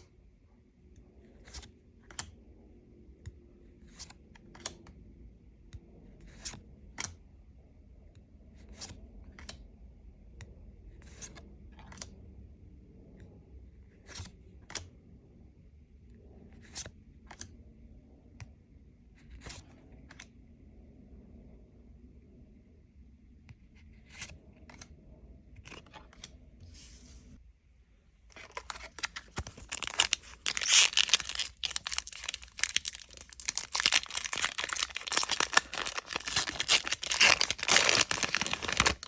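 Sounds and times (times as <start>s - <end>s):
cards clicking and rustling: 28.3s - 39.0s.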